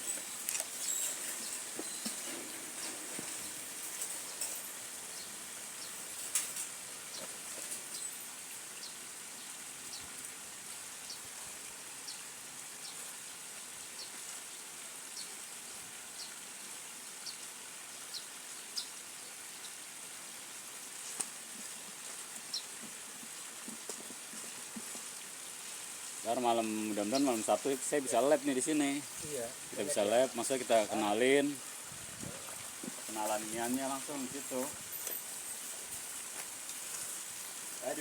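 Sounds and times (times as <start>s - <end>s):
steady high hiss: 0.0s - 14.5s, 24.4s - 38.0s.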